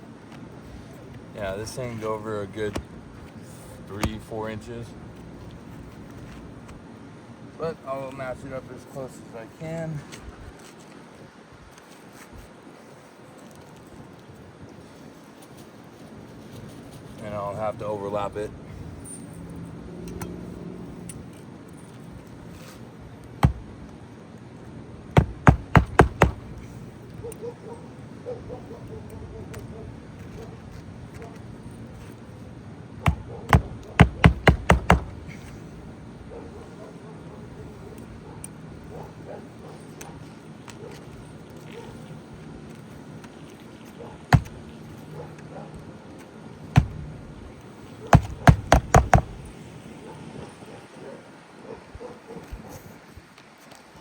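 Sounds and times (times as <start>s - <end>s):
hammer nailing shingle: 4.0s - 4.3s, 23.4s - 23.9s, 25.1s - 26.8s, 33.0s - 35.7s, 44.3s - 44.8s, 46.7s - 49.5s.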